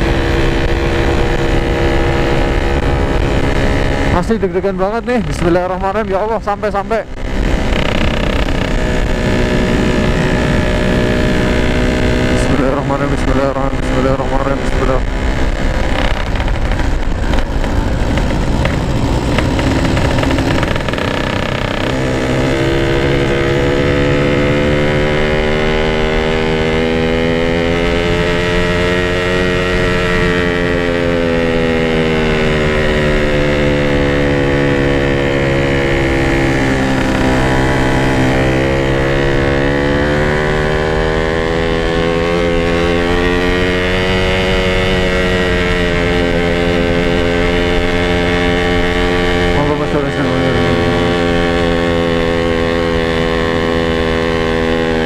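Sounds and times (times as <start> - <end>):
two-stroke motorcycle engine running: 0.0 - 55.0.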